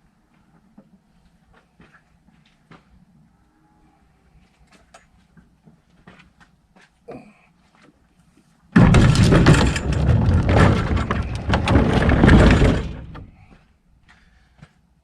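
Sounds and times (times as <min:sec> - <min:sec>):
clattering crash of hard objects: 0:08.8 - 0:13.4.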